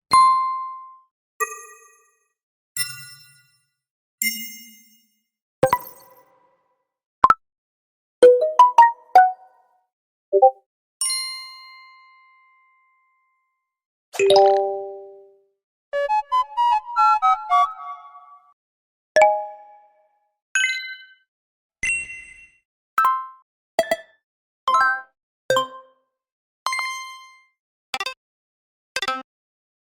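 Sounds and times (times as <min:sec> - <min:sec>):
plucked notification notes: 0:14.2 - 0:14.9.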